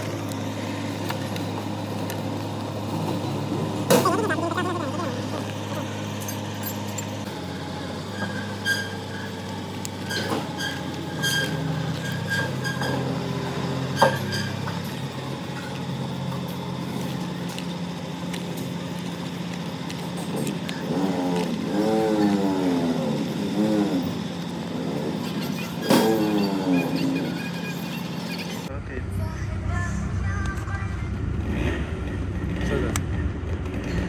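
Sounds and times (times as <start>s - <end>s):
machine running steadily: 0.0s - 34.0s
sharp metallic clinks and taps: 5.9s - 7.3s.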